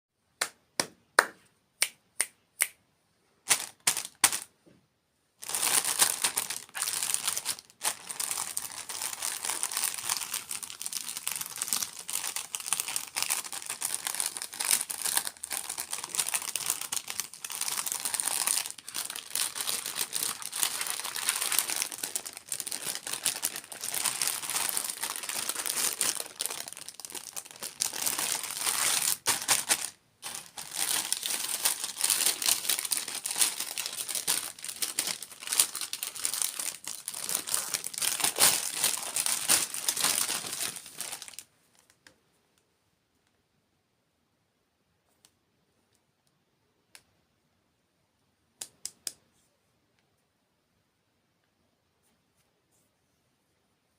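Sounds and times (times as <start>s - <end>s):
packaging crinkling: 3.5s - 4.5s, 5.4s - 41.9s.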